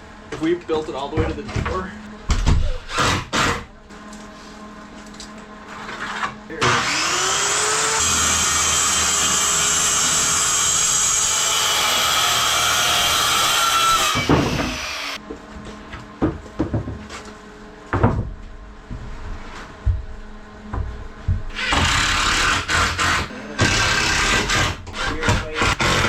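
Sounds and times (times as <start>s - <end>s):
power tool motor running: 6.6s - 15.2s, 21.5s - 26.0s
wooden knocks and clatters: 16.2s - 17.2s, 17.9s - 19.1s.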